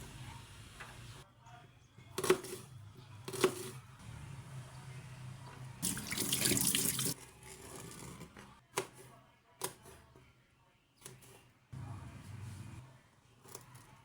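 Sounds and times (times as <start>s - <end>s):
kitchen tap running: 4.8s - 8.1s.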